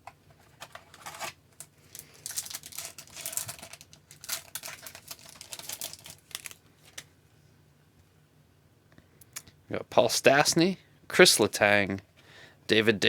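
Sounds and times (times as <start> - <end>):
cards rustling and sliding: 0.4 - 1.4
wrapper crinkling: 0.5 - 7.1.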